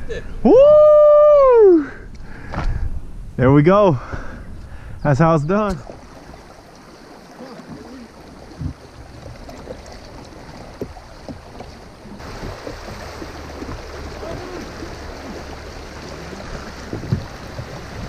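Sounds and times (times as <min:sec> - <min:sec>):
river water rushing: 0:05.8 - 0:18.0
knock on kayak: 0:16.8 - 0:18.0.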